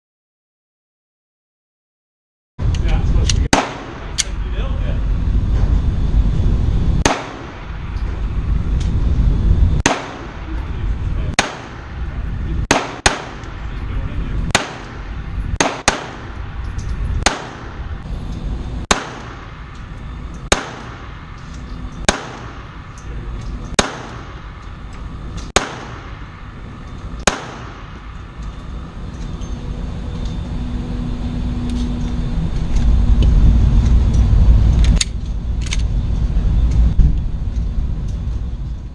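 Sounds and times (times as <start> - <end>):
low rumbling noise: 2.6 - 38.9
pistol shots: 3.5 - 4.4, 7.0 - 7.7, 9.8 - 10.5, 11.3 - 12.0, 12.6 - 13.6, 14.5 - 16.4, 17.2 - 17.9, 18.9 - 19.6, 20.5 - 21.2, 22.0 - 22.9, 23.7 - 24.5, 25.5 - 26.3, 27.2 - 28.1.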